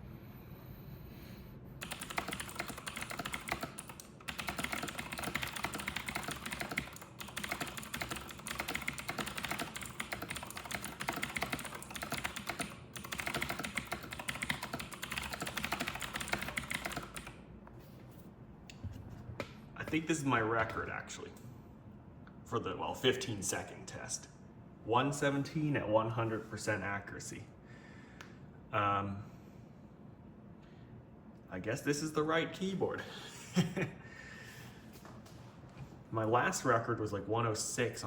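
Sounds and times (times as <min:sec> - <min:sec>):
fast typing on clicky keyboard: 0:01.8 - 0:17.4.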